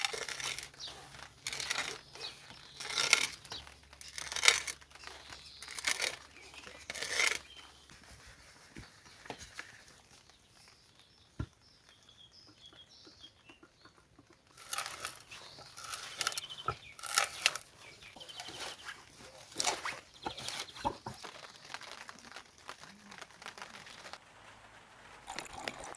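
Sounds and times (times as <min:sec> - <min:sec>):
rustling crinkling handling noises: 0:00.0 - 0:12.1, 0:14.2 - 0:25.9
faint bird chirps: 0:08.8 - 0:21.4.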